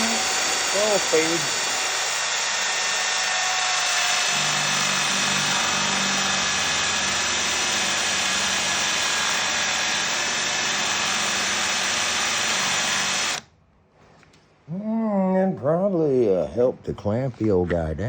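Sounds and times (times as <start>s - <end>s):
drill whining cutting wood: 0.0s - 13.5s.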